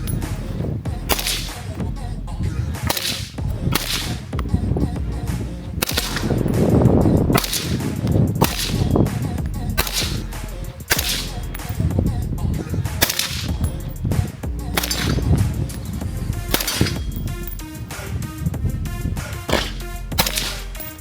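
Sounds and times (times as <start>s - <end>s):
suppressed rifle shots: 0.0s - 1.9s, 2.6s - 4.5s, 5.1s - 21.0s.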